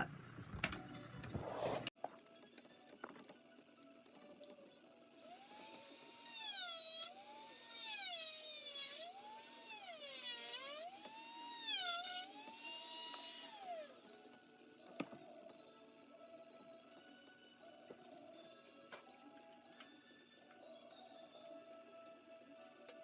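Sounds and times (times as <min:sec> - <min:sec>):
rotary tool cutting plastic: 0:05.1 - 0:14.1.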